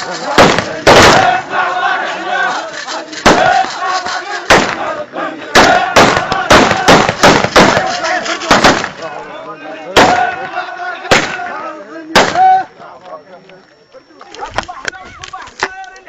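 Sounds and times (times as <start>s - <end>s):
loud sharp bangs: 0.0s - 1.6s, 3.2s - 9.0s, 9.9s - 11.5s, 12.1s - 12.6s
men chanting and shouting: 0.0s - 16.0s.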